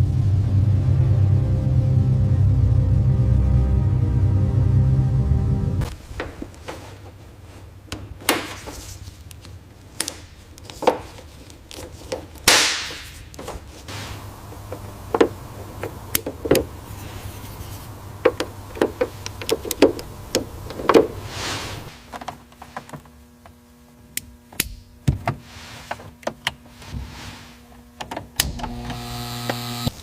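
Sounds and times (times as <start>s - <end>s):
low steady hum: 0.0s - 30.0s
taps and knocks: 18.2s - 21.2s
short hiss: 21.2s - 22.0s.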